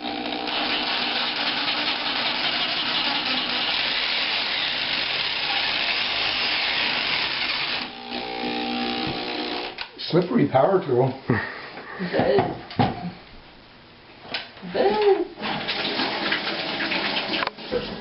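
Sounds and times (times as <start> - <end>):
electric jigsaw cutting pumpkin: 0.0 - 9.8.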